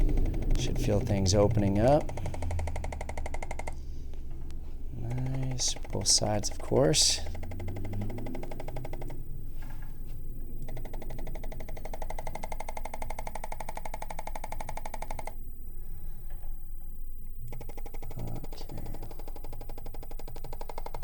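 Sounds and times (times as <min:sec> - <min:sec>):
electric adjusting instrument tapping: 0:04.4 - 0:10.0.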